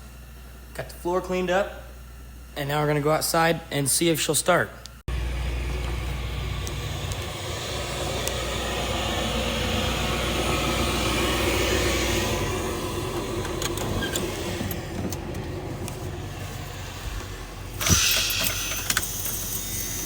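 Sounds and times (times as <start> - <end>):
vehicle engine idling: 5.1 - 18.3.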